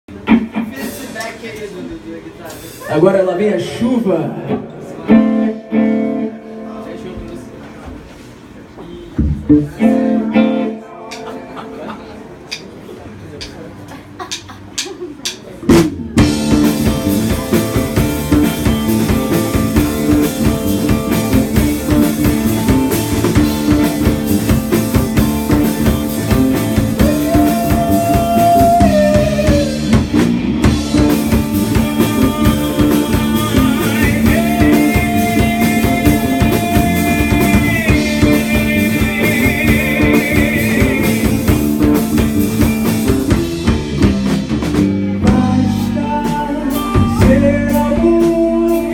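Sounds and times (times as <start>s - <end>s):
rock band playing: 0.1s - 1.5s, 2.5s - 3.8s, 4.5s - 7.8s, 9.1s - 13.6s, 14.2s - 48.9s
guitar lead with bent notes: 4.5s - 7.6s, 9.2s - 12.7s, 15.7s - 48.9s
plucked guitar notes: 4.6s - 7.6s, 9.2s - 12.8s, 16.2s - 47.7s.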